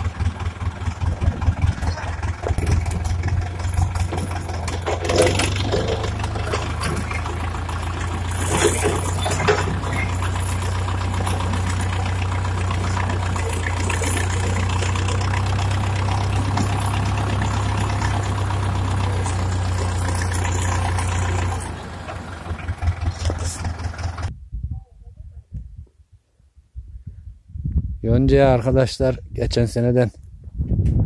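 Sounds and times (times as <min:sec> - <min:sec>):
tractor diesel engine running: 0:00.0 - 0:24.3.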